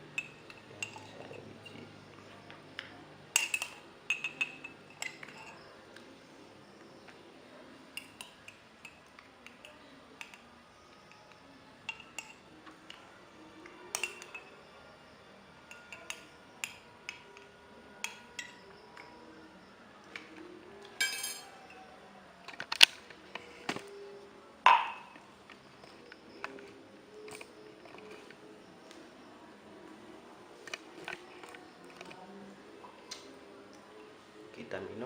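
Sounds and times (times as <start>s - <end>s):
utensils clinking on glass: 0.1s - 2.2s, 3.3s - 5.8s, 11.9s - 13.1s, 13.8s - 14.6s, 15.7s - 18.8s, 21.0s - 21.9s.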